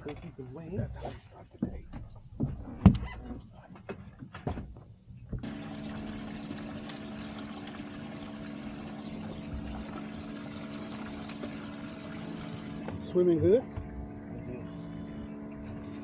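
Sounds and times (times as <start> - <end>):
water pouring: 5.4 - 12.9
pump humming: 5.4 - 16.0.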